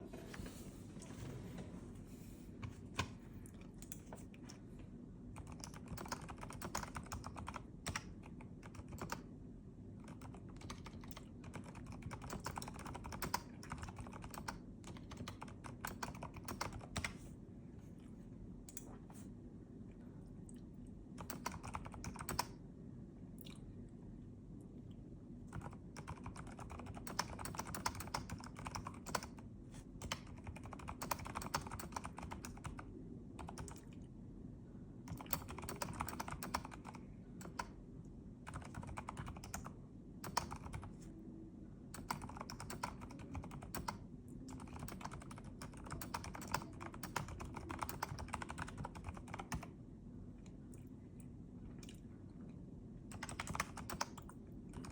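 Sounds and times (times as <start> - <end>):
steady low hum: 0.0 - 54.9
mechanical keyboard typing clicks: 5.4 - 9.2, 10.0 - 17.2, 21.2 - 22.6, 25.5 - 29.4, 30.0 - 32.8, 35.1 - 37.7, 38.5 - 40.9, 42.0 - 49.7, 53.1 - 54.9.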